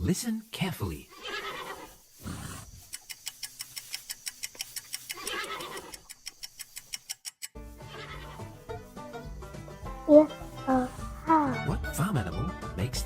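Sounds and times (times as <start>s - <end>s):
hooves clip-clopping: 0.4s - 11.2s
horse whinny: 1.1s - 2.8s, 5.1s - 6.1s, 7.8s - 8.6s.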